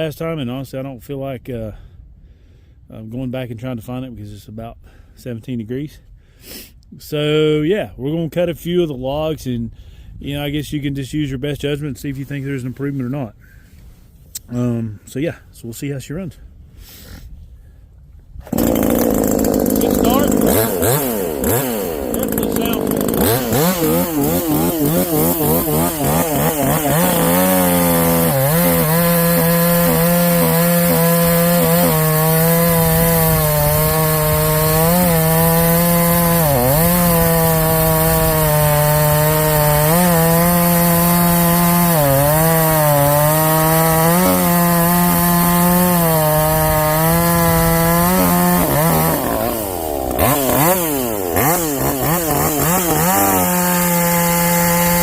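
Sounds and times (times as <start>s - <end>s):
chainsaw cutting through log: 18.4s - 55.0s.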